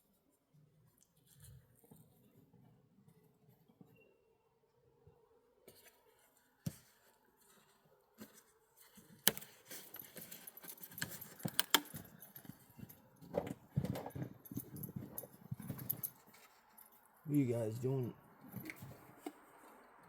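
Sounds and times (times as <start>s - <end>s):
metallic jingling and clinking: 9.8s - 17.2s.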